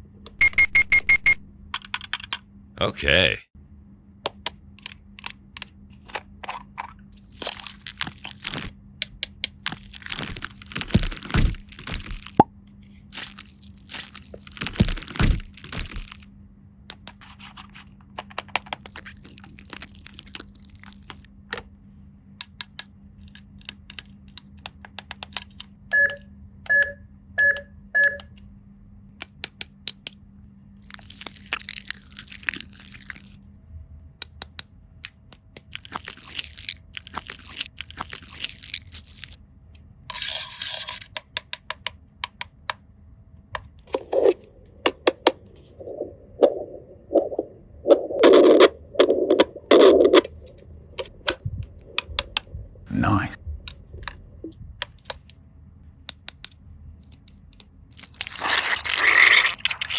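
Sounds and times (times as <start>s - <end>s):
short electronic beeps: 0.4s - 1.4s, 25.9s - 28.3s
plastic toy pieces clicking: 1.8s - 2.4s
plastic crinkling: 7.2s - 8.7s, 9.6s - 12.4s, 13.0s - 16.3s, 18.8s - 21.2s, 35.7s - 39.4s, 58.0s - 59.9s.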